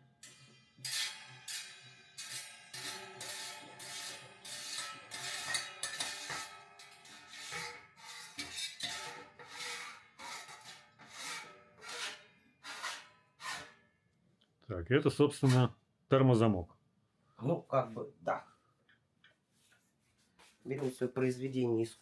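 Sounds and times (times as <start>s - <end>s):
music with scraping beat: 0.2s - 9.8s.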